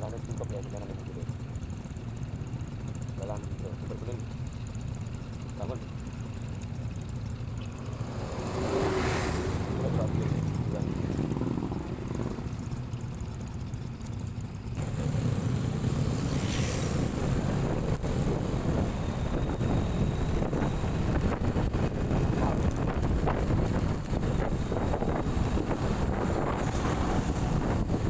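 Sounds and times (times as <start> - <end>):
vehicle rumble: 0.0 - 28.0
wind buffeting microphone: 15.9 - 28.0.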